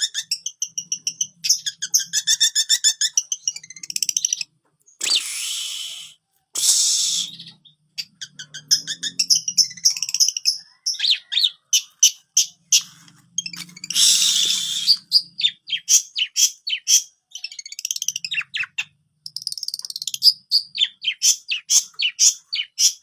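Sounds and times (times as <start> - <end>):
bird singing chattering notes: 0.0 - 5.2, 7.3 - 23.0
harsh rasping bird calls: 0.0 - 23.0
bird chirps and whistles: 5.0 - 7.8, 13.4 - 23.0.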